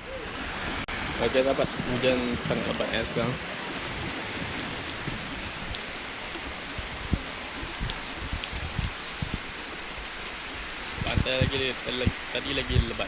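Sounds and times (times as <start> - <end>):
heavy rain pouring: 0.0 - 13.0
raindrops knocking: 1.7 - 9.8.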